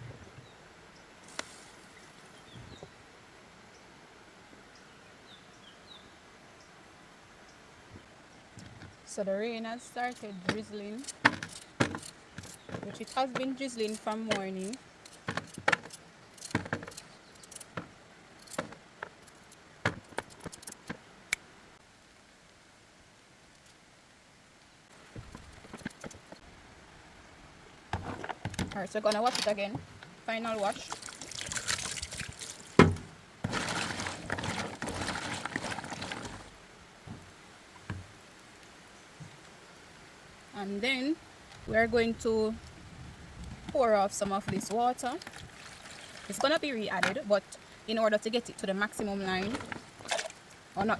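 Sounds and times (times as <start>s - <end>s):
water splashing in bowl: 30.6s - 36.5s, 45.2s - 46.6s.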